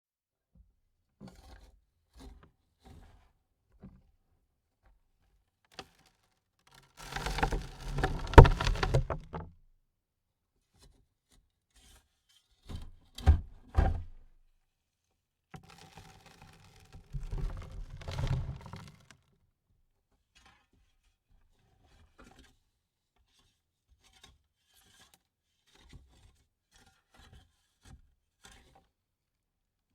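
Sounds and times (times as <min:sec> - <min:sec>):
soil falling on coffin lid: 0:07.0 - 0:09.4
clods thumping: 0:07.0 - 0:09.5.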